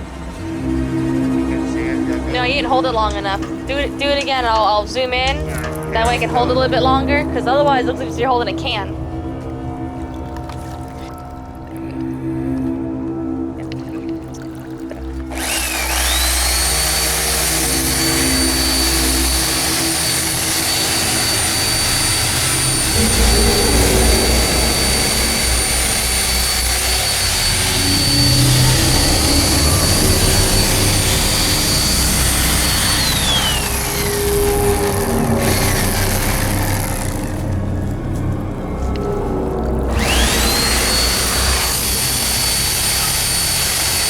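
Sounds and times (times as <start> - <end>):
chainsaw engine revving: 15.3 - 37.6, 39.9 - 44.0.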